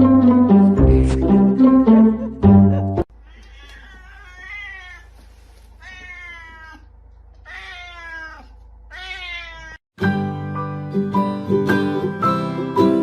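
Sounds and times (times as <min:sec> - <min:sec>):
cat meowing: 0:03.2 - 0:05.2, 0:05.8 - 0:09.8.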